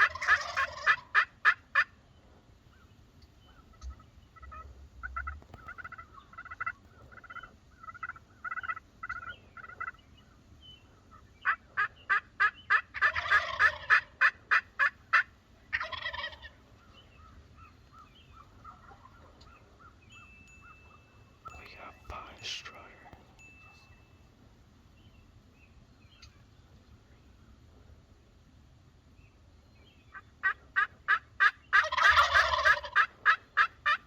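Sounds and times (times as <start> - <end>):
turkey yelps: 0.0 - 1.9, 3.5 - 10.0, 11.1 - 20.0, 30.1 - 34.0
turkey gobbling: 0.0 - 2.0, 2.7 - 10.4, 11.0 - 20.0, 30.1 - 34.0.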